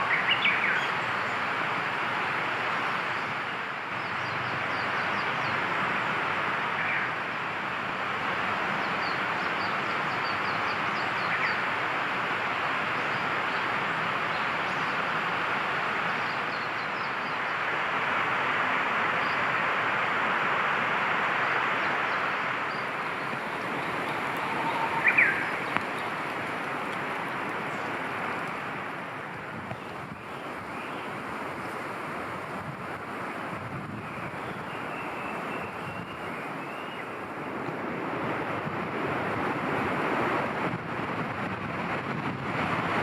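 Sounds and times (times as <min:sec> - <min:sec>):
steady rushing noise: 0:00.0 - 0:43.0
faint bird chirps: 0:22.1 - 0:26.2
loud bird call: 0:22.8 - 0:28.2.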